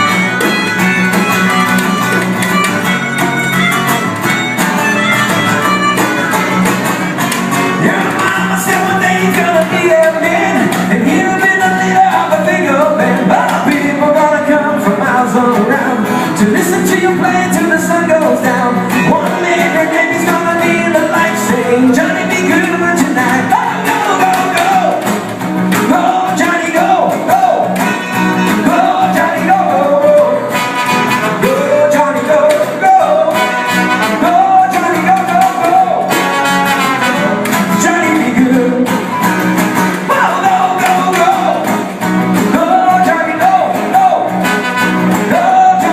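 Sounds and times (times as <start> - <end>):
instrumental accompaniment with guitar: 0.0 - 45.9
person singing: 7.6 - 25.1, 25.8 - 39.1, 40.0 - 45.9.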